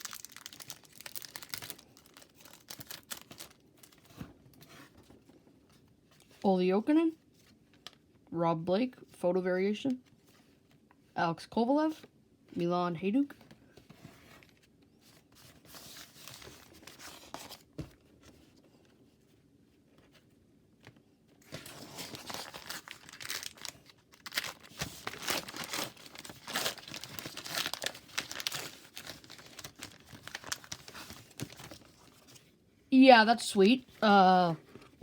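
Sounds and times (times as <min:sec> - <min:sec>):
plastic wrapper crinkling and tearing: 0:00.0 - 0:04.1, 0:21.5 - 0:32.4.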